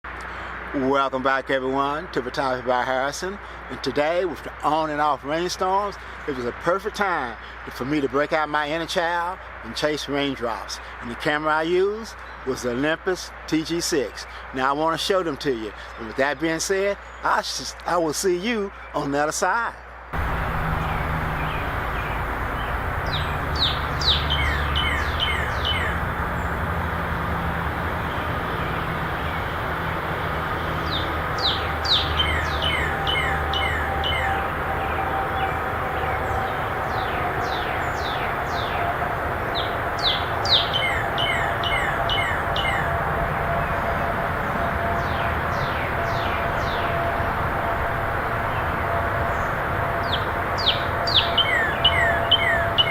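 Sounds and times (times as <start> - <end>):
low rumble: 20.2 - 31.8
songbird whistling falling notes: 20.8 - 26.0, 30.9 - 36.2, 50.0 - 52.9.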